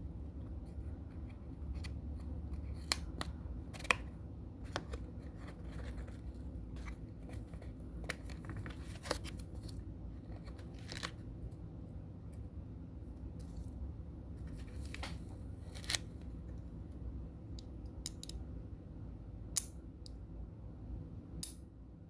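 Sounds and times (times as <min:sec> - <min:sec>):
low steady hum: 0:00.0 - 0:22.0.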